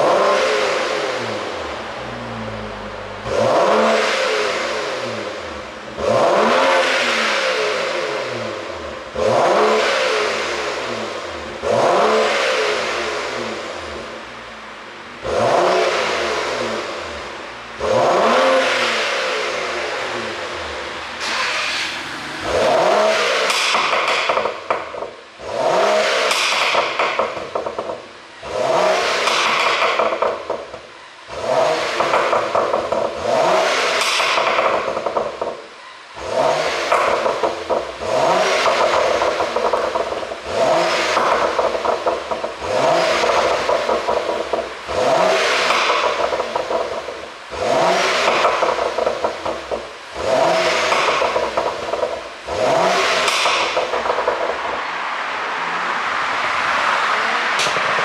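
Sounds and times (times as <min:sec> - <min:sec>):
car engine revving: 0:00.0 - 0:58.0
exhaust pops and crackles: 0:23.5 - 0:25.2, 0:26.3 - 0:28.2, 0:29.2 - 0:30.9, 0:31.9 - 0:33.2, 0:33.9 - 0:35.7, 0:36.9 - 0:54.9.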